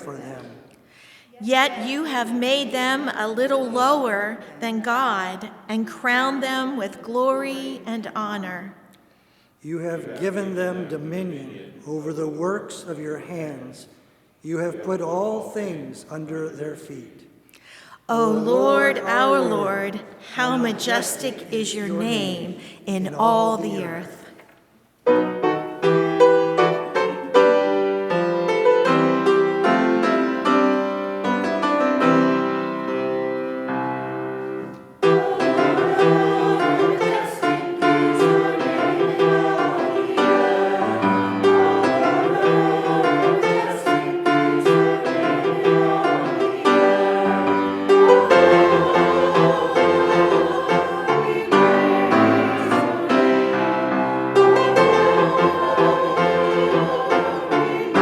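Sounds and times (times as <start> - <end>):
piano music: 18.1 - 24.3, 25.0 - 58.0.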